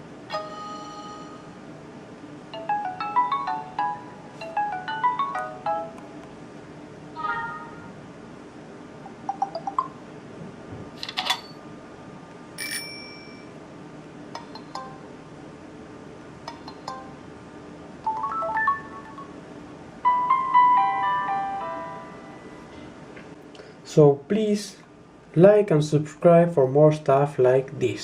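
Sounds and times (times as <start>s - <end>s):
bell-like ding: 12.6s - 13.5s.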